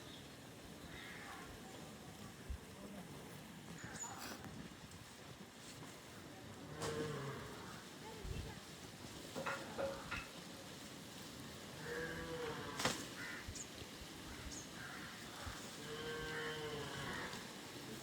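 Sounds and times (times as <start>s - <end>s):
cow mooing: 15.8s - 17.4s.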